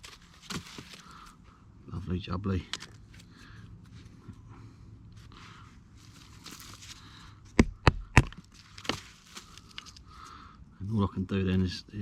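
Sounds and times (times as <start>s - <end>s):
rustling: 5.2s - 7.4s, 8.2s - 10.4s
wood splitting knocks: 7.6s - 9.0s.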